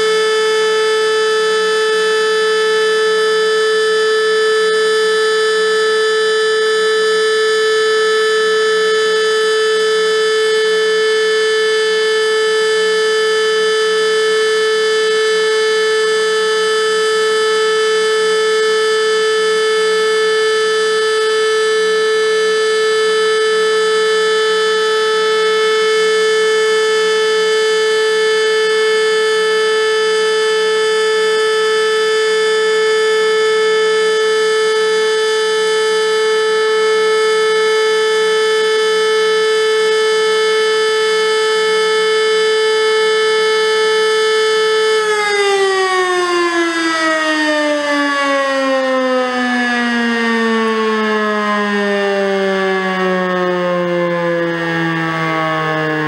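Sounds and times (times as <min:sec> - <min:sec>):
siren steady tone: 0:00.0 - 0:56.0
siren rotor winding down: 0:45.2 - 0:56.0.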